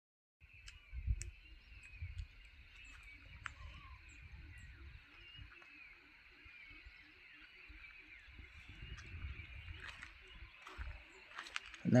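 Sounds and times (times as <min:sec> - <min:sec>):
small birds chirping: 0:00.4 - 0:12.0.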